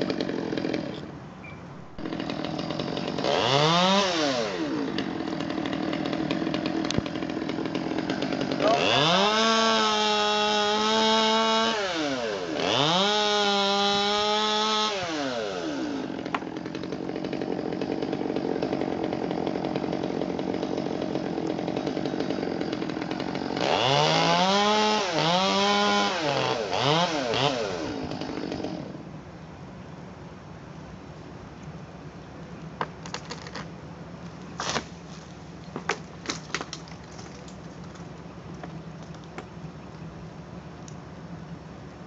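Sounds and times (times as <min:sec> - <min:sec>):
chainsaw engine revving: 0:00.0 - 0:01.1, 0:01.9 - 0:29.0.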